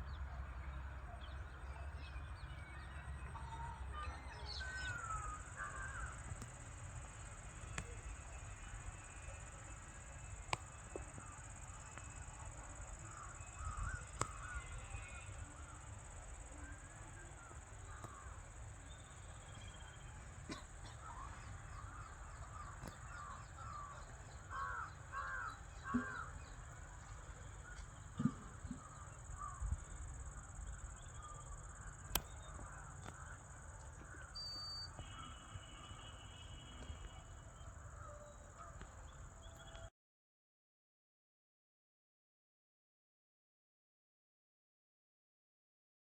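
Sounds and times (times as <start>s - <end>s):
crows cawing: 4.6s - 6.2s, 13.1s - 15.0s, 17.4s - 18.4s, 21.0s - 26.5s, 28.5s - 29.6s, 32.4s - 34.4s
birds calling: 10.6s - 39.8s.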